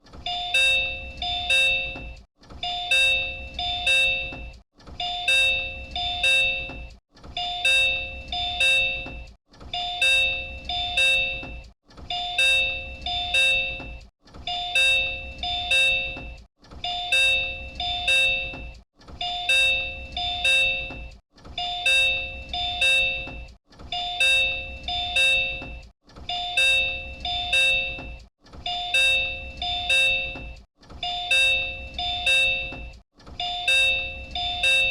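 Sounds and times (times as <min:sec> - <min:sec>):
two-tone door chime: 0:00.2 - 0:34.9.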